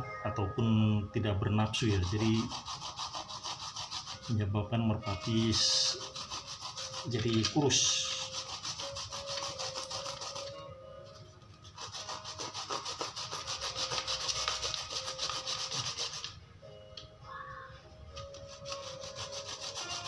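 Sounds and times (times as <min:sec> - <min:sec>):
root grated on a grater: 0:18.6 - 0:20.0.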